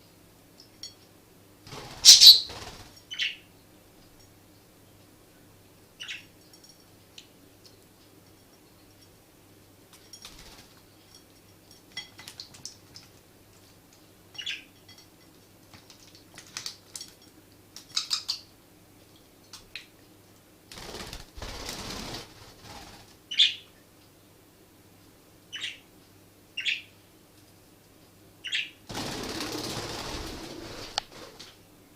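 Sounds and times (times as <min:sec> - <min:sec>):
budgies chirping: 0:02.0 - 0:02.5
wing flapping: 0:20.7 - 0:23.2, 0:28.9 - 0:31.6.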